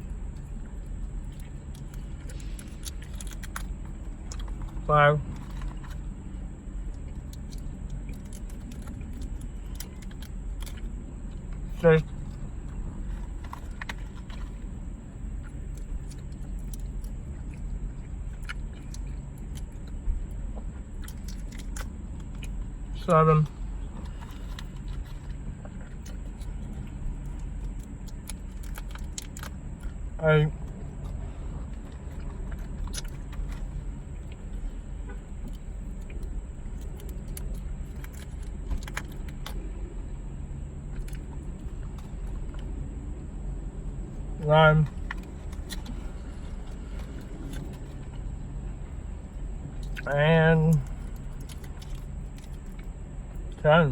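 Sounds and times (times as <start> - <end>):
steady low hum: 0.0 - 53.9
chewing candy: 0.2 - 6.2, 6.9 - 22.8, 23.4 - 30.0, 30.6 - 34.8, 49.8 - 53.6.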